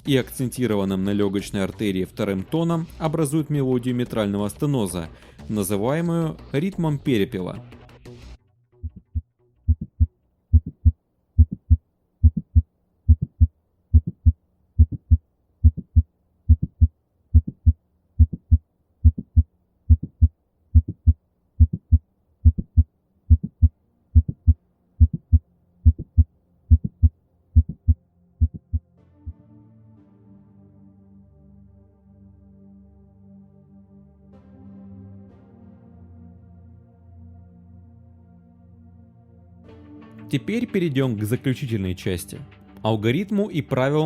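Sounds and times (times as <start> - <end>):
thudding heartbeat: 8.8 - 28.9.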